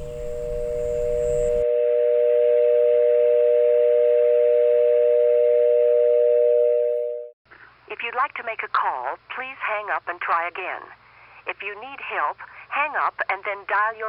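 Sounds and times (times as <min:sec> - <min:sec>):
background noise: 0:07.5 - 0:14.0.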